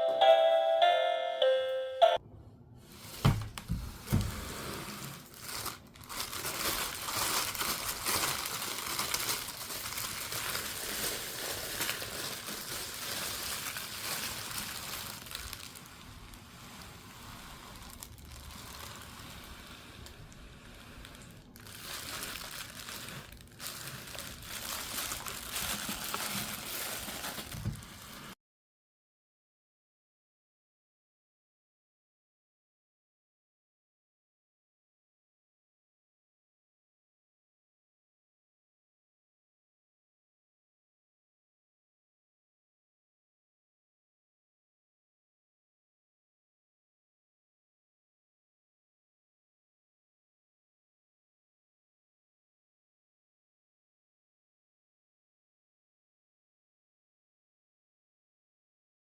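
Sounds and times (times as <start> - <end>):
bell-like music cue: 0.0 - 2.2
plastic packaging crinkling: 3.0 - 28.4.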